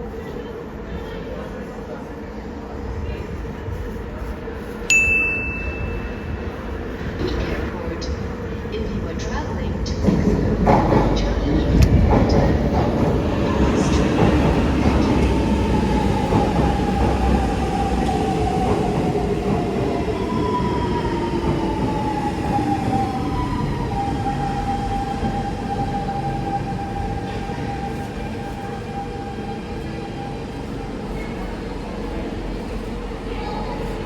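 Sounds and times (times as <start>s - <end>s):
rumble of wheels on rail: 0.0s - 34.0s.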